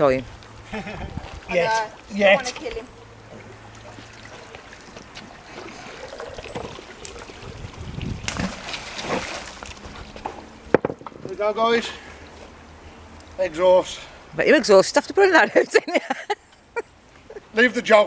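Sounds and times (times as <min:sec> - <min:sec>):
water sloshing and trickling: 0:00.0 - 0:13.4
metal knocks: 0:10.7 - 0:11.3.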